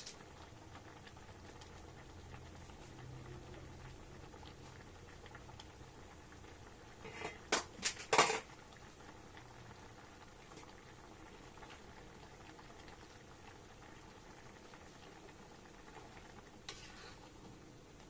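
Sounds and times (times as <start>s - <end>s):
soup simmering in a pot: 0.0s - 18.0s
kitchen utensils clattering: 7.1s - 8.5s.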